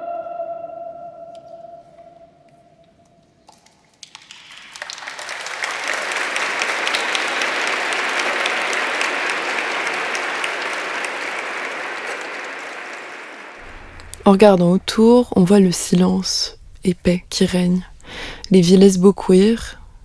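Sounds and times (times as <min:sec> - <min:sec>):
audience applause: 0:04.0 - 0:16.7.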